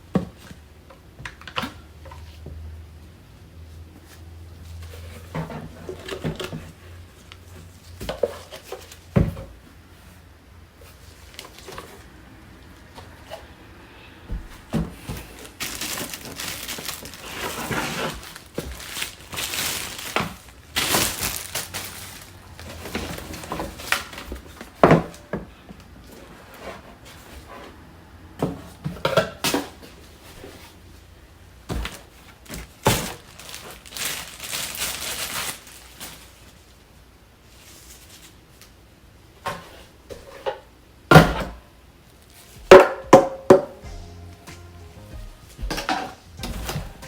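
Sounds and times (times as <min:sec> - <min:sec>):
wrapping rustling and crinkling: 0:10.8 - 0:12.2, 0:14.4 - 0:25.2, 0:31.6 - 0:38.9.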